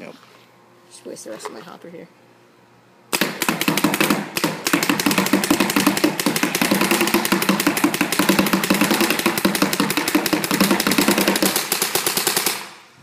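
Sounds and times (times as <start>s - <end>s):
paintball marker rapid firing: 3.1s - 12.8s.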